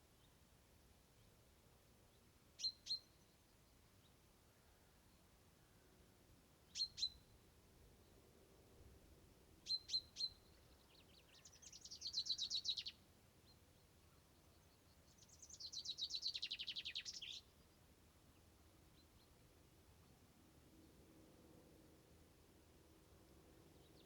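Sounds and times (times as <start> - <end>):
songbird singing: 2.1 - 4.2, 6.7 - 7.4, 9.6 - 19.5, 23.3 - 24.0.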